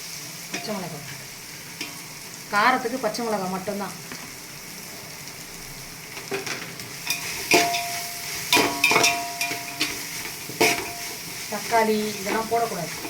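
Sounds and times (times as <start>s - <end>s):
food sizzling in a pan: 0.0s - 13.0s
spoon clanking against pan: 6.3s - 11.2s.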